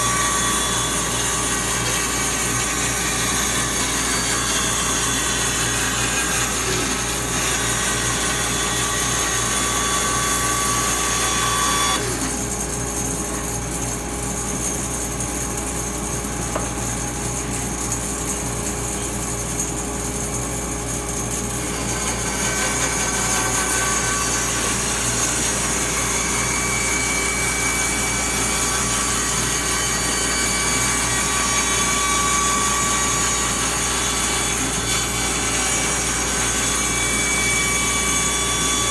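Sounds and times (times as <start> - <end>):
saw cutting wood: 0.0 - 12.8, 21.3 - 38.9
band saw running: 0.0 - 14.7, 20.6 - 38.9.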